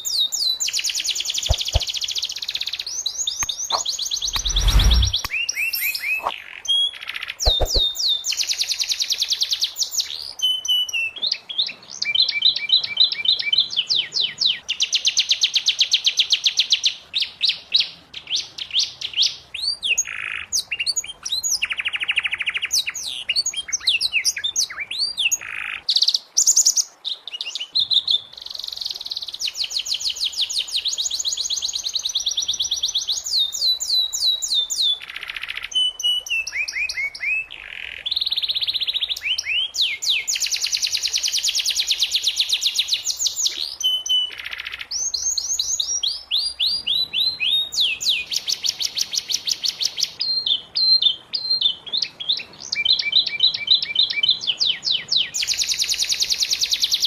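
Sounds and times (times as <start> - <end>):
canary singing trills: 0.0 - 8.7.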